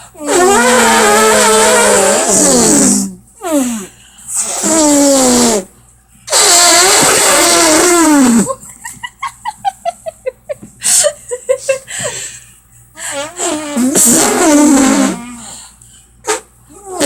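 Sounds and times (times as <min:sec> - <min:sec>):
women imitating elephant trumpeting: 0:00.2 - 0:03.1
giggling laughter: 0:08.5 - 0:12.1.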